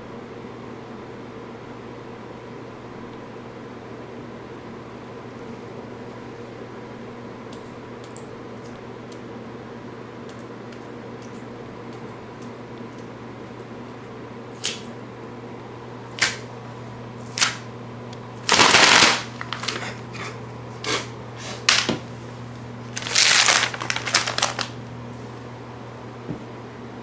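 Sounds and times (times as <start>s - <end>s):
steady electrical hum: 0.0s - 27.0s
crackling crinkling rustles: 18.4s - 20.0s, 21.6s - 25.5s.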